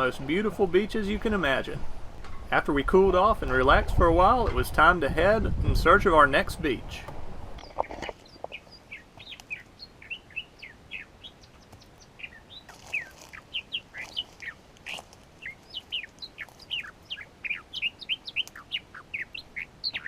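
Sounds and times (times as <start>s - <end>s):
small birds chirping: 6.8s - 20.0s.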